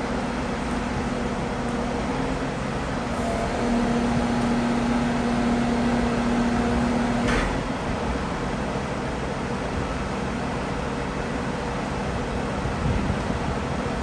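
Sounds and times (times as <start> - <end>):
held hum: 3.1 - 7.7
heavy machinery droning: 3.1 - 7.9.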